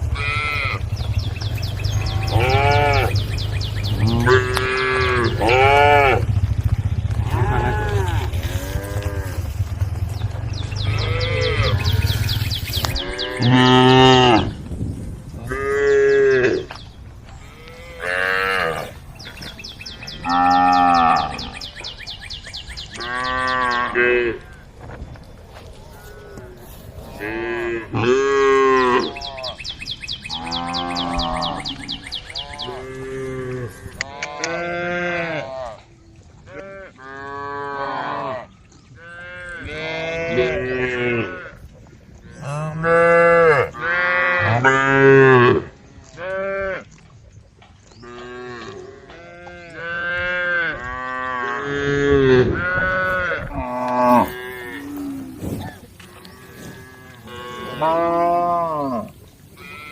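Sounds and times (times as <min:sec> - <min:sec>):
cattle mooing: 0:00.0 - 0:09.8, 0:10.6 - 0:14.6, 0:15.4 - 0:21.7, 0:25.9 - 0:29.6, 0:36.5 - 0:41.6, 0:42.3 - 0:46.9, 0:48.0 - 0:59.9.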